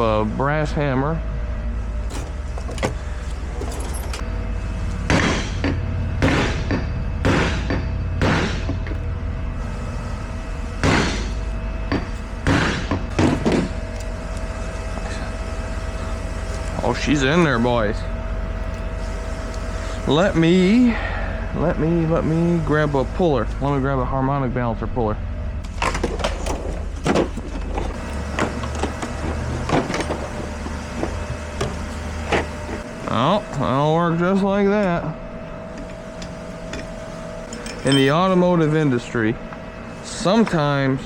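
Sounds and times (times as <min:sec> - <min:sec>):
low motor hum: 0:00.0 - 0:41.0
metal tools clanking: 0:02.0 - 0:04.3, 0:25.7 - 0:32.8, 0:35.8 - 0:38.5.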